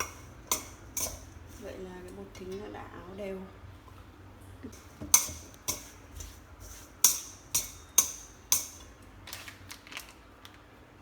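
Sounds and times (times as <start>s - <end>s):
utensil clinking against bowl: 0.0s - 2.8s, 4.7s - 9.0s.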